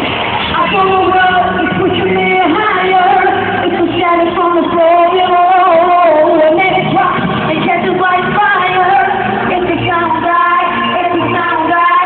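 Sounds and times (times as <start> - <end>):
pop band playing: 0.0 - 12.0
women singing: 0.4 - 12.0.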